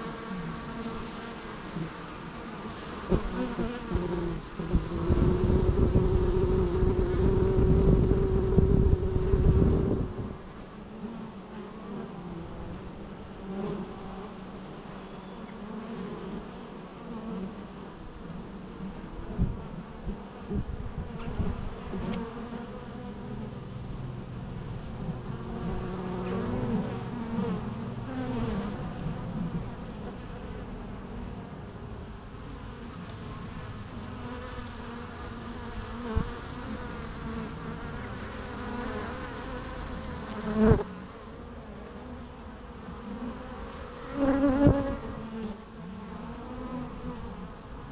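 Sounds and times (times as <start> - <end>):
bees buzzing: 0.0 - 18.1, 32.3 - 47.9.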